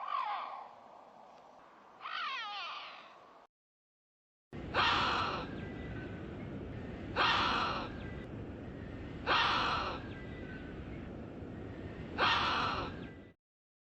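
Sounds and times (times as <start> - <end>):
low background rumble: 4.6 - 13.4.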